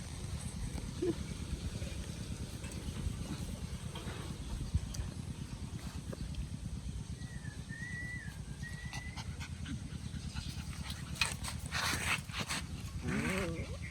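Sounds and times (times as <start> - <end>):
puppy whining: 8.0 - 13.9
puppies panting: 8.2 - 13.9.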